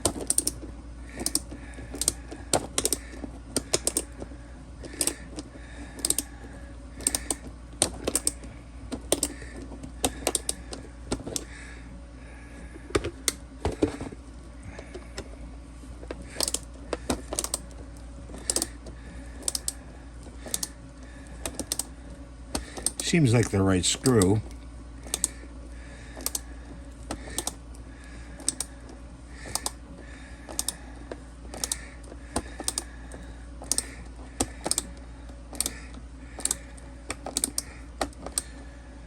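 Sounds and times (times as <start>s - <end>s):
screwdriver clicking: 0.0s - 0.6s, 2.0s - 3.0s, 3.6s - 4.1s, 6.0s - 6.3s, 7.0s - 8.4s, 9.0s - 9.4s, 16.4s - 17.6s, 18.4s - 18.7s, 20.4s - 20.7s, 21.5s - 21.9s, 26.2s - 26.4s, 27.2s - 27.6s, 29.5s - 29.8s, 32.6s - 32.9s, 34.5s - 34.9s, 35.5s - 35.8s, 36.4s - 37.7s.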